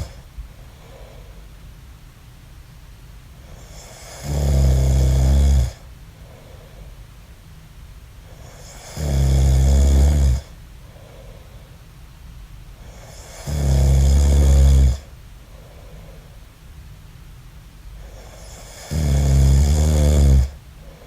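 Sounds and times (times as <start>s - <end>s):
man snoring: 0.0s - 0.2s, 3.6s - 5.8s, 8.4s - 10.5s, 12.9s - 15.1s, 18.0s - 20.6s
faint breathing: 0.0s - 1.6s, 5.8s - 7.2s, 9.9s - 12.0s, 14.6s - 16.6s, 20.4s - 21.0s.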